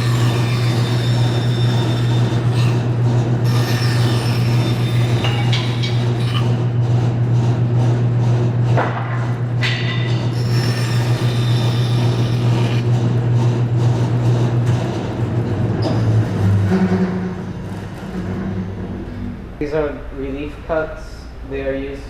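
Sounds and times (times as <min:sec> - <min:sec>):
saw blade whining through wood: 0:00.0 - 0:06.8, 0:10.3 - 0:12.9
band saw motor hum: 0:00.0 - 0:08.6, 0:10.2 - 0:15.7.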